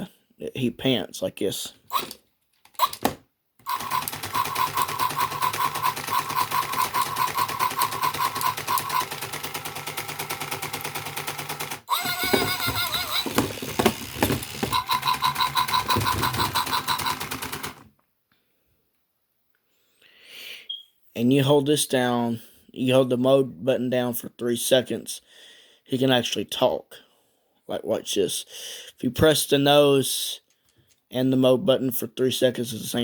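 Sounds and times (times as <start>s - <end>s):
electronic sliding call: 3.7s - 9.4s, 11.9s - 17.8s
toy electronic panting: 3.7s - 9.6s, 11.9s - 17.8s.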